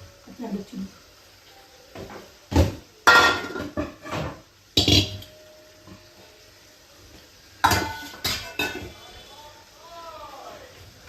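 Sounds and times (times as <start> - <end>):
pots clanking: 1.4 - 6.3, 7.2 - 9.0.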